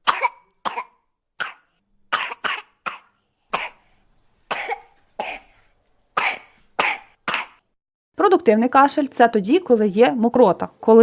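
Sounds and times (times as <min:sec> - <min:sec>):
person coughing wetly: 0:00.0 - 0:03.8, 0:04.5 - 0:05.6, 0:06.2 - 0:07.6.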